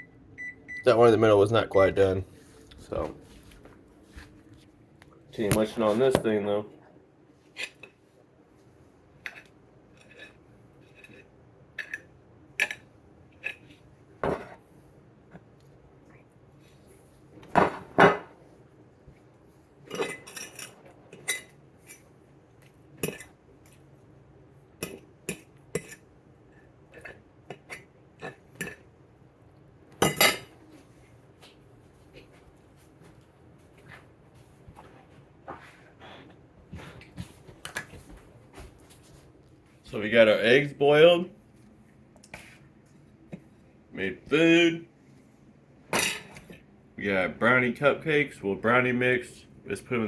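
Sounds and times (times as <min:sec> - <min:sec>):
dishes and pans clattering: 0:17.5 - 0:18.4, 0:45.9 - 0:46.6.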